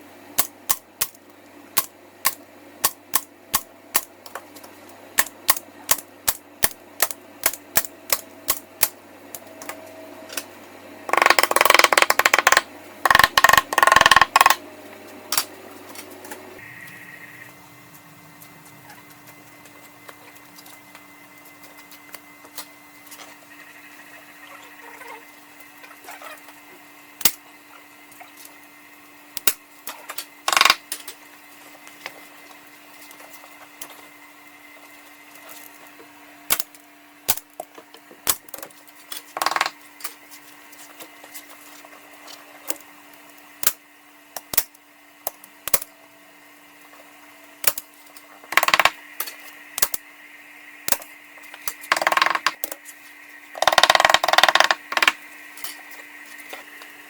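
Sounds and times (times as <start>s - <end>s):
faint steady hum: 0.0s - 57.0s.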